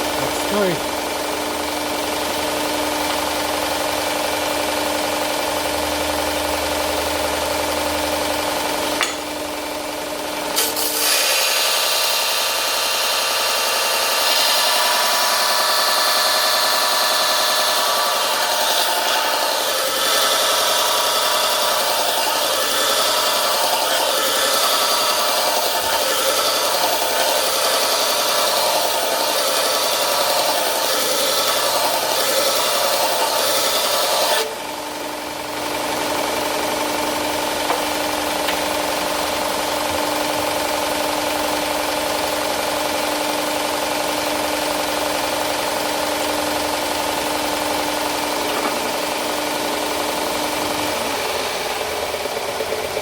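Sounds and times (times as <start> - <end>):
grinder humming unloaded: 8.5 - 42.8, 44.9 - 53.0
belt grinder grinding steel: 10.6 - 34.6.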